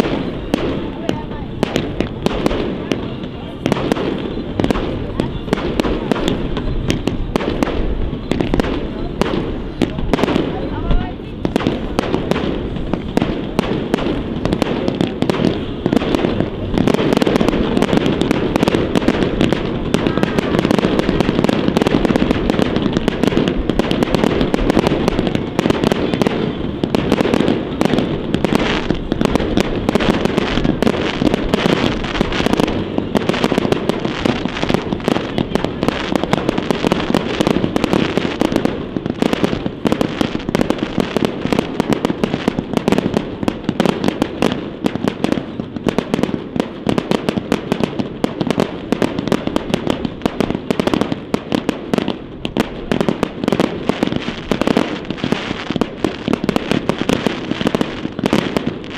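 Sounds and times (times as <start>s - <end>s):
fireworks bursts and crackling: 0.0s - 58.9s.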